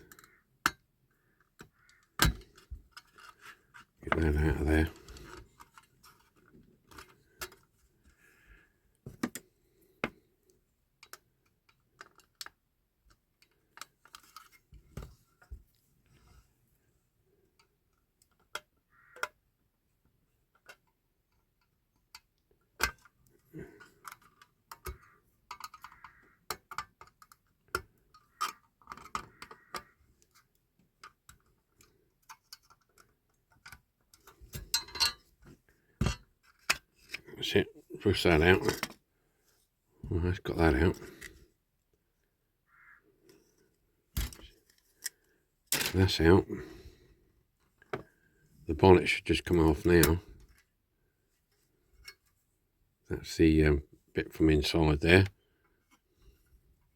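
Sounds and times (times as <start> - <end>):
hand tools clicking and scraping: 22.8 - 35.4.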